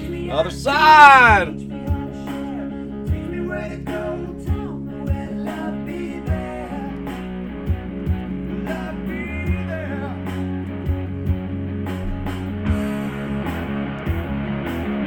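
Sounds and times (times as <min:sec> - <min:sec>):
person singing: 0:00.0 - 0:07.4, 0:08.4 - 0:10.6
guitar: 0:00.0 - 0:15.0
rock music: 0:00.0 - 0:15.0
drum beat: 0:01.1 - 0:02.0, 0:10.9 - 0:13.2.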